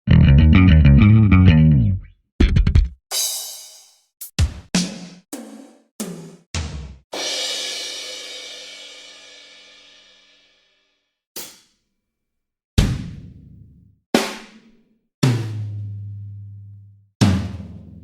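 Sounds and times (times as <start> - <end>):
quick drum hits: 2.4 - 8.0, 12.8 - 13.4, 15.2 - 15.8, 17.2 - 18.0.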